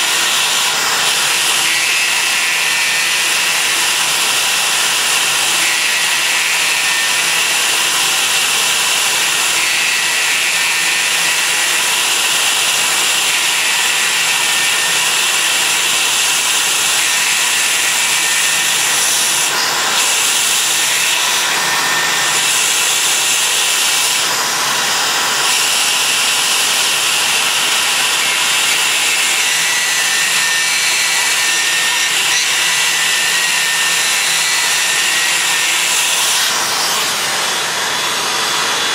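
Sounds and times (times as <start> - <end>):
cutter milling plastic: 0.0 - 38.9
milling machine spindle whine: 0.0 - 38.9.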